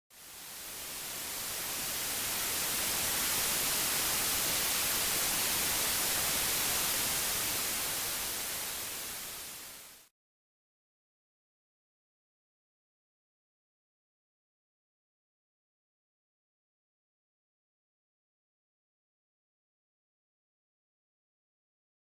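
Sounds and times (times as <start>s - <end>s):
static hiss: 0.1s - 10.1s.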